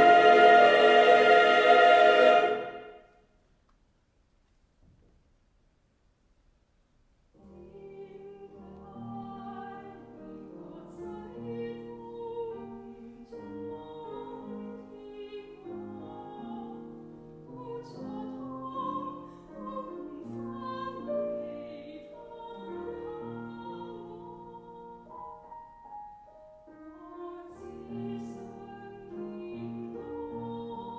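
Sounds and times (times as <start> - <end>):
operatic singing: 0.0 - 3.1
piano and instruments: 0.0 - 3.2, 7.4 - 30.9.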